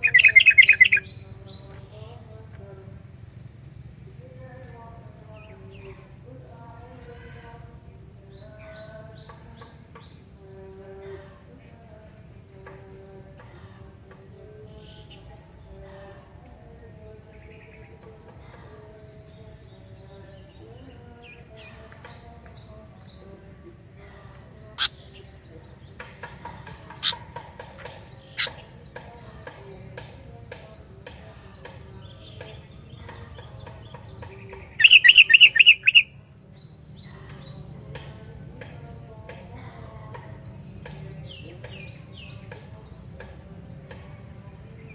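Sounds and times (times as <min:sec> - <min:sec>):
bird rapid note run: 0:00.0 - 0:01.3, 0:34.7 - 0:36.2
bulbul chirping: 0:00.0 - 0:01.4, 0:33.8 - 0:36.2.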